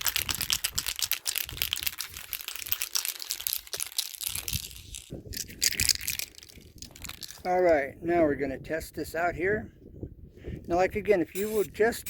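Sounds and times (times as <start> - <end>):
mixing ball rattling in spray can: 0.0 - 7.5, 11.4 - 11.7.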